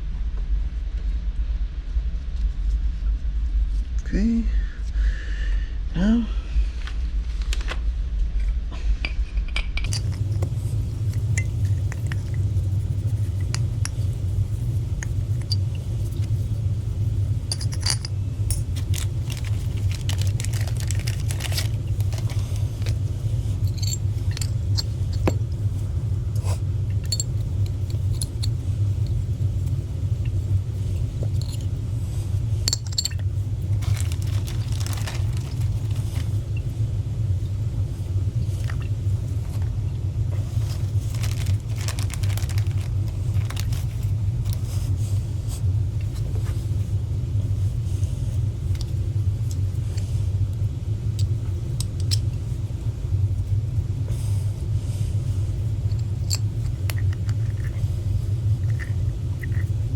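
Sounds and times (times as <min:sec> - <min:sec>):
low motor hum: 0:00.0 - 0:59.9
metallic clinks of valve parts: 0:17.5 - 0:18.7, 0:23.6 - 0:25.4, 0:32.6 - 0:33.2.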